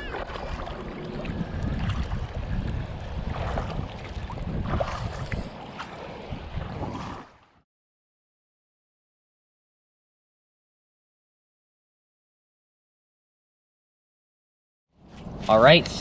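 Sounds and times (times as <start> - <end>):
wind buffeting microphone: 0.0 - 7.3.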